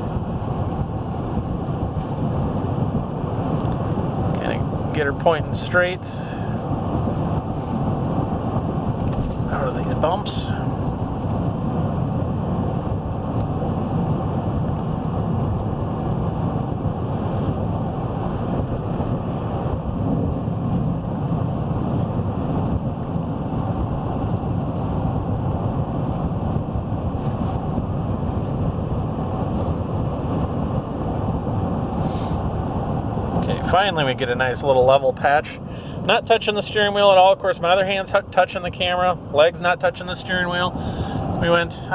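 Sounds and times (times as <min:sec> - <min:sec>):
road and drivetrain noise in cab: 0:00.0 - 0:41.9.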